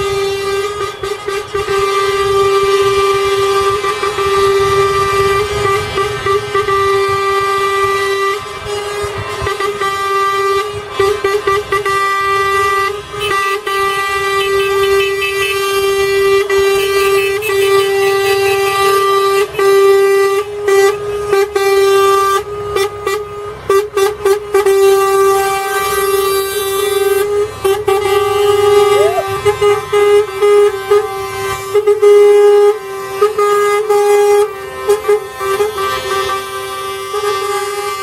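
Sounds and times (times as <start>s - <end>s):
engine noise: 0.0s - 38.0s
vehicle horns sounding: 0.0s - 38.0s
short quick horn toots: 26.5s - 31.6s.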